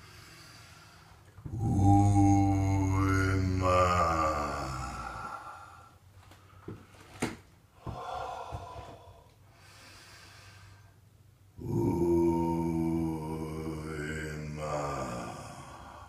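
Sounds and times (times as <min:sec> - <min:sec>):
man breathing deeply: 0:00.0 - 0:01.3, 0:04.4 - 0:06.9, 0:07.7 - 0:11.1, 0:14.7 - 0:16.0
man chanting low tone: 0:01.4 - 0:05.7, 0:11.6 - 0:16.0.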